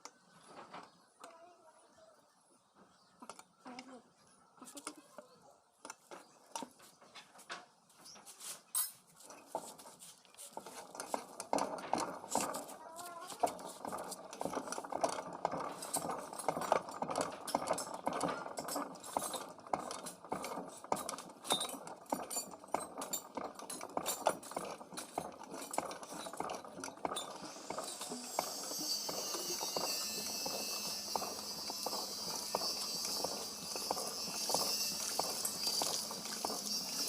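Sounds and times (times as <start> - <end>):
sharp knocks and clinks: 15.5 - 37.0.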